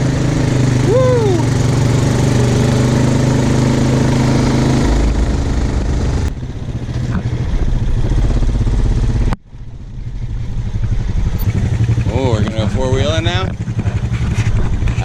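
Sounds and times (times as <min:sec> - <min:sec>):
quad bike engines rumbling: 0:00.0 - 0:15.0.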